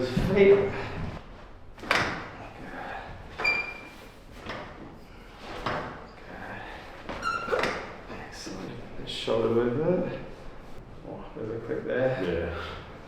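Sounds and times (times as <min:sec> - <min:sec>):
brief squeak: 0:03.4 - 0:03.9.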